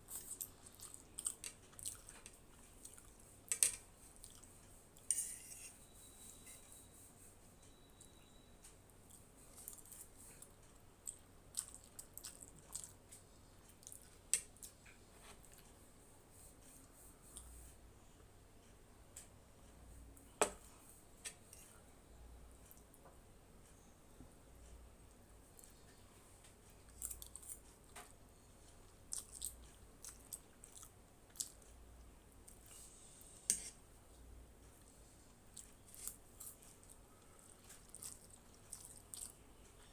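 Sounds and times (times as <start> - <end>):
wet chewing mouth sounds: 9.1 - 13.0, 35.5 - 39.9.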